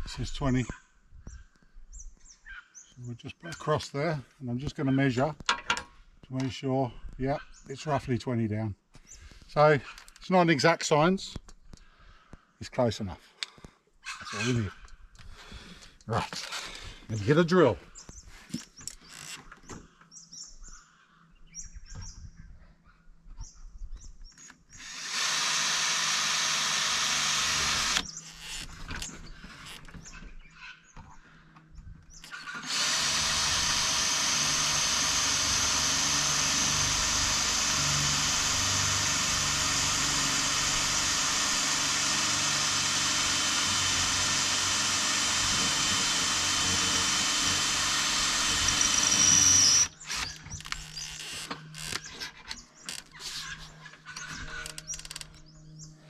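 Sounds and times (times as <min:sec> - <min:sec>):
power drill drilling: 0:24.7 - 0:29.8, 0:32.2 - 0:52.1.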